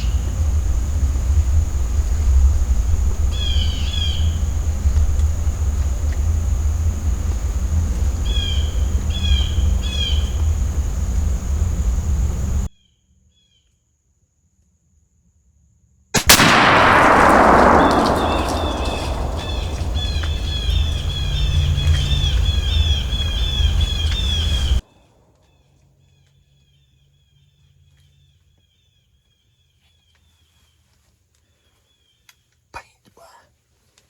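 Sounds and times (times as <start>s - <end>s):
rifle shot with rumbling decay: 16.2s - 24.7s.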